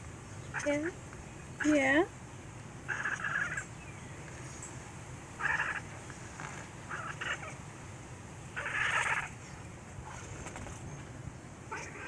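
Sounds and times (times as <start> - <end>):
cat chittering: 2.9 - 3.7, 5.4 - 5.9, 6.9 - 7.6, 8.6 - 9.4, 11.7 - 12.0.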